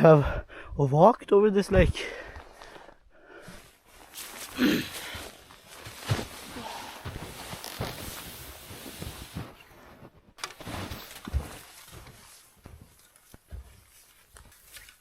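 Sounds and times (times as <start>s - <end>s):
footsteps in snow: 3.5s - 15.0s
rustling: 3.5s - 15.0s.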